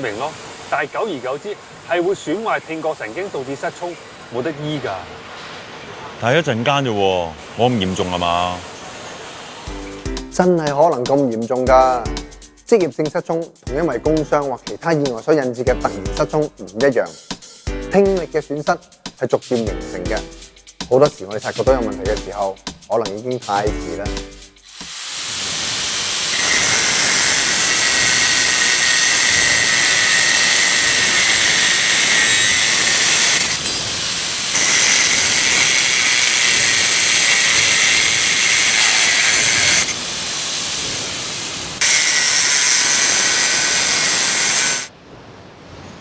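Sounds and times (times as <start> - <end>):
hissing machine with high whine: 24.8 - 44.9.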